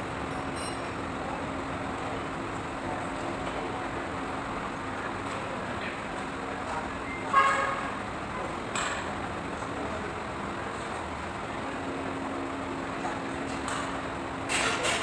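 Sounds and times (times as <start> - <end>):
traffic noise: 0.0 - 15.0
vehicle horn toot: 7.2 - 8.0.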